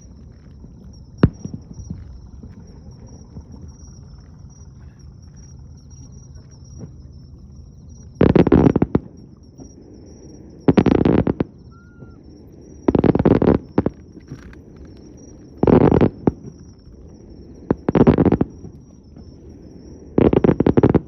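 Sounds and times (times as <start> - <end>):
low steady rumble: 0.0 - 20.8
fireworks booming: 12.8 - 21.0.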